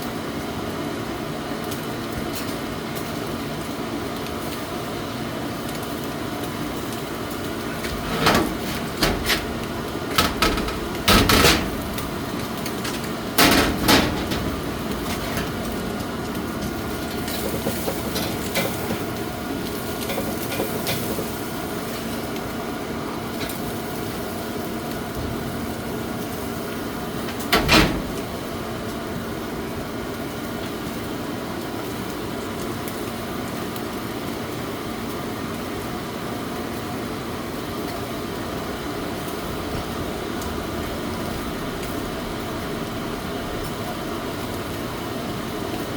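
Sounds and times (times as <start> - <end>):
steady mechanical hum: 0.0 - 45.9
sharp knocks and clatters: 7.7 - 19.0.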